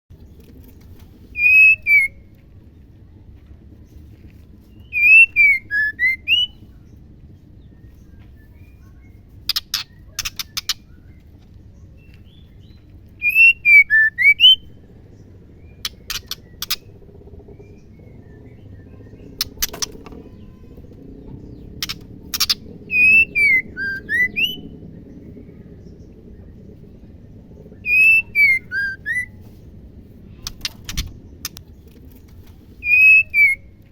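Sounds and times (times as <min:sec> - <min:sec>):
bird whistling phrases: 0:01.3 - 0:02.2, 0:04.8 - 0:06.6, 0:13.2 - 0:14.7, 0:21.8 - 0:24.7, 0:27.8 - 0:29.4, 0:32.8 - 0:33.8
sharp clicks: 0:30.4 - 0:32.6.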